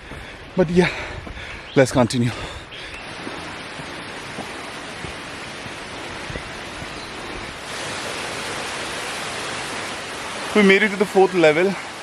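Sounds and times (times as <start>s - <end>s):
waterfall rushing: 2.9s - 12.0s.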